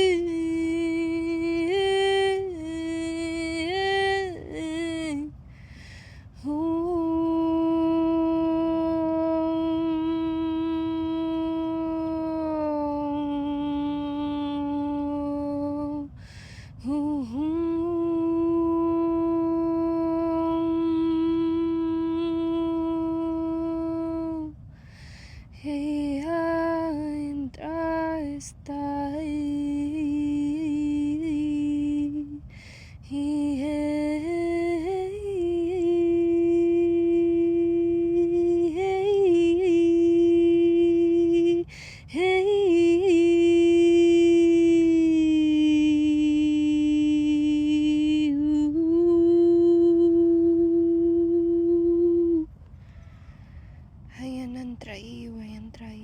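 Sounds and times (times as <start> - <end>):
woman humming: 6.4 - 16.2, 16.8 - 24.5, 33.1 - 52.5.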